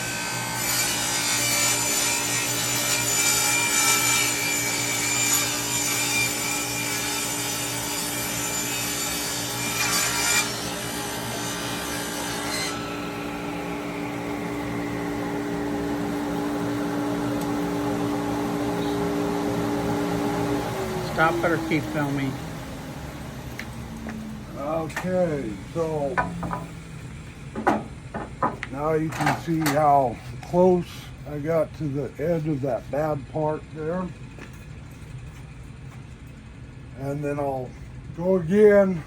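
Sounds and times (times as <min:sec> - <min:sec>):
table saw cutting wood: 0:00.0 - 0:26.9
dust collector humming: 0:00.0 - 0:39.0
saw blade winding down: 0:01.8 - 0:22.5.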